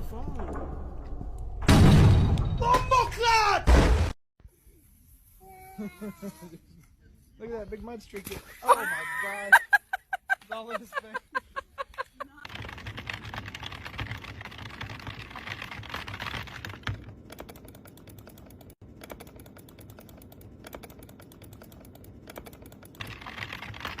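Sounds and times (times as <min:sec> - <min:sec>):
rapid clicking and tapping: 0:12.4 - 0:24.0.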